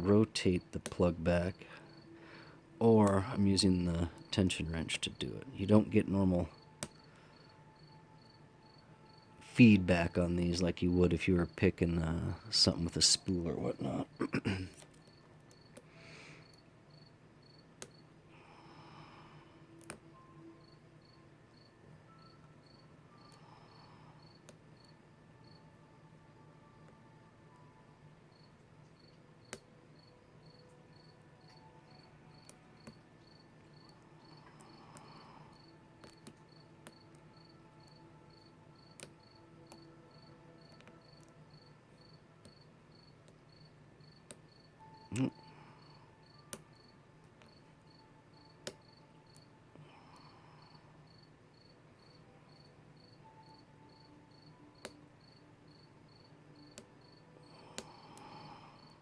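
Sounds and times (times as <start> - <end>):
cricket chirping: 6.6 - 9.3, 16.4 - 18.0, 20.2 - 25.7, 28.3 - 29.2, 30.0 - 54.6, 55.2 - 59.0.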